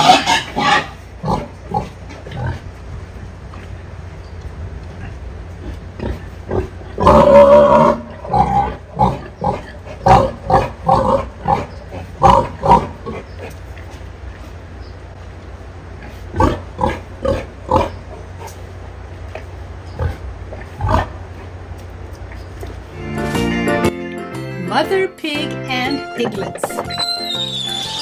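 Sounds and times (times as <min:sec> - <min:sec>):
pig grunting: 0:00.0 - 0:03.9, 0:04.8 - 0:14.6, 0:15.9 - 0:21.6.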